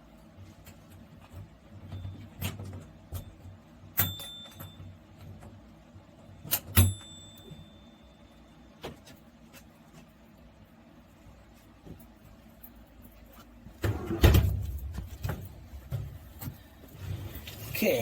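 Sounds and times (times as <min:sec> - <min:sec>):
thin ringing tone: 0:04.0 - 0:05.0, 0:06.8 - 0:08.7.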